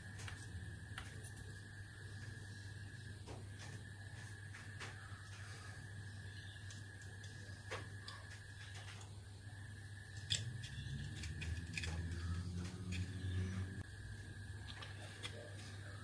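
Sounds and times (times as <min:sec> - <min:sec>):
steady low hum: 0:00.0 - 0:16.0
plastic parts clicking: 0:10.2 - 0:13.4.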